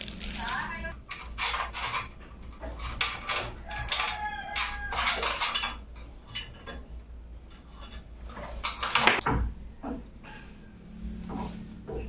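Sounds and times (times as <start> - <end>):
small metal parts clinking: 0.0 - 6.8.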